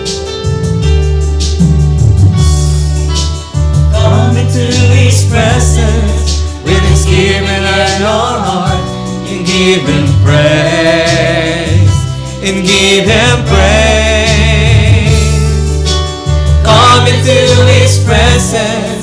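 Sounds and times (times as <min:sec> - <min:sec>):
band with bass and keyboard: 0:00.0 - 0:19.0
people singing: 0:03.9 - 0:15.7, 0:16.6 - 0:19.0.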